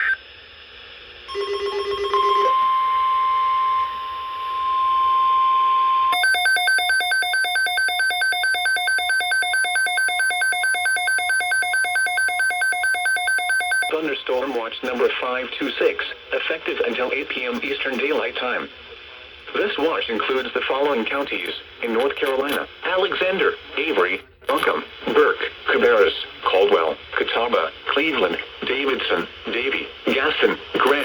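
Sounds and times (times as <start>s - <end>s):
steady warning tone: 1.3s - 15.0s
fast electronic beeping: 6.2s - 13.9s.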